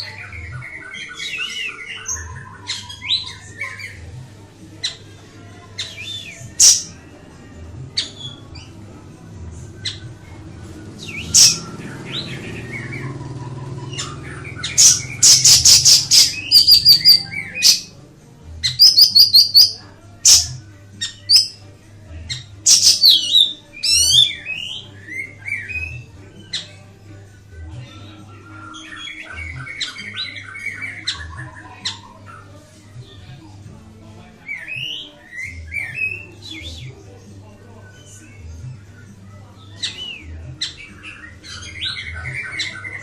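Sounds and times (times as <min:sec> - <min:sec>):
bird chirping and trilling: 0:00.0 - 0:04.0, 0:05.8 - 0:07.0, 0:11.0 - 0:17.9, 0:18.6 - 0:21.6, 0:22.3 - 0:26.8, 0:39.8 - 0:43.0.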